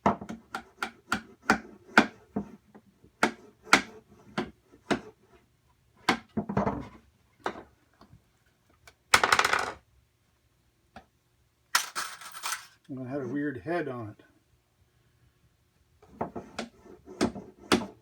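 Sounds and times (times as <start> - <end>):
hammer tapping nail into wood: 0.0 - 2.2, 3.2 - 5.0.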